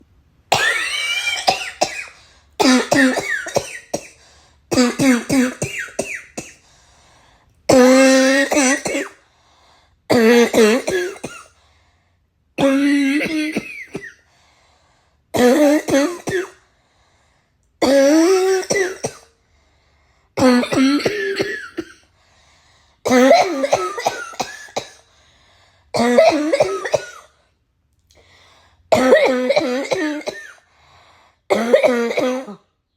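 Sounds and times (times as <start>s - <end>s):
person coughing harshly: 0.5s - 6.6s, 7.7s - 9.2s, 10.1s - 11.6s, 12.6s - 14.3s, 15.4s - 16.6s, 17.8s - 19.3s, 20.4s - 22.1s, 23.1s - 25.0s, 26.0s - 27.4s, 28.9s - 30.7s, 31.5s - 32.7s.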